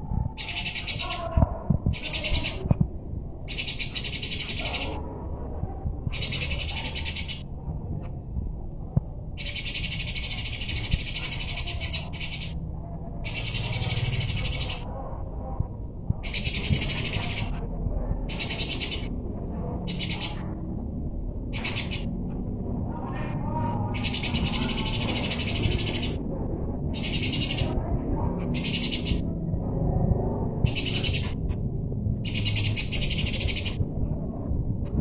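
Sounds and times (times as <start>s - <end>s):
low background rumble: 0.0s - 35.0s
sparrows chattering: 0.3s - 1.3s, 1.9s - 2.7s, 3.4s - 5.0s, 6.1s - 7.5s, 9.4s - 12.6s, 13.2s - 14.9s, 16.2s - 17.6s, 18.2s - 19.2s, 19.8s - 20.6s, 21.5s - 22.2s, 23.9s - 26.2s, 26.9s - 27.8s, 28.5s - 29.3s, 30.6s - 31.4s, 32.2s - 33.8s.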